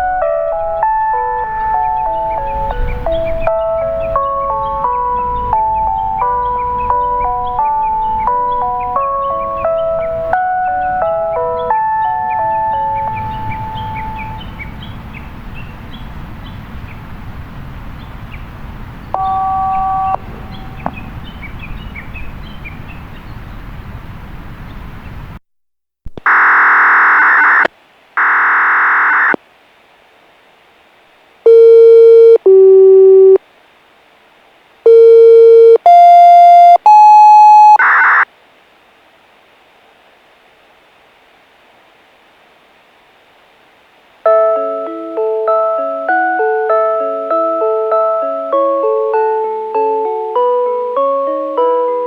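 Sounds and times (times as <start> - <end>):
electronic beeps: 26.3 - 29.4, 31.5 - 33.4, 34.9 - 38.2.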